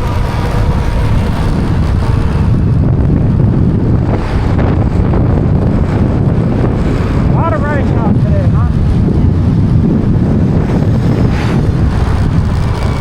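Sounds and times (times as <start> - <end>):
low rumble of air and road: 0.0 - 13.0
wind buffeting microphone: 0.0 - 13.0.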